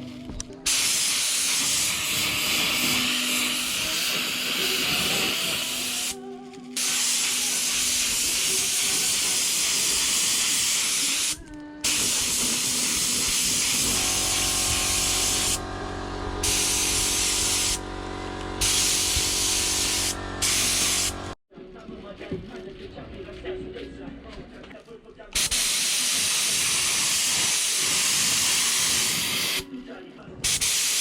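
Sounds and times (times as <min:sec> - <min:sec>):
spray gun hissing: 0:00.7 - 0:06.2, 0:06.8 - 0:21.4, 0:25.4 - 0:29.7, 0:30.4 - 0:31.0
machine hum: 0:13.8 - 0:21.4.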